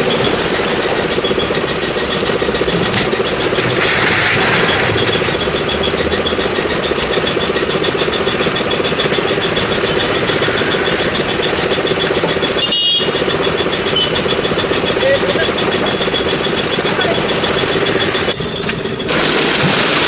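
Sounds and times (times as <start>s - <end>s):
concrete mixer engine running: 0.0s - 20.0s.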